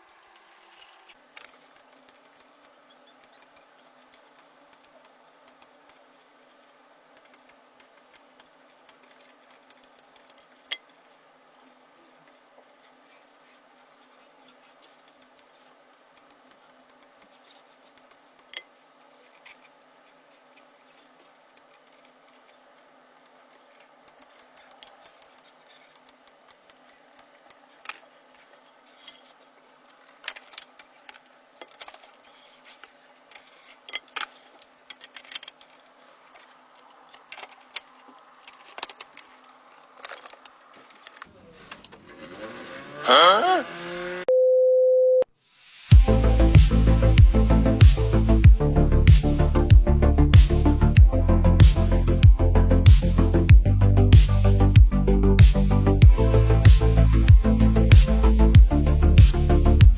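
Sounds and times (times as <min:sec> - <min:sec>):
rubbing and handling noises: 0:00.0 - 0:44.1
low steady hum: 0:45.9 - 0:59.9.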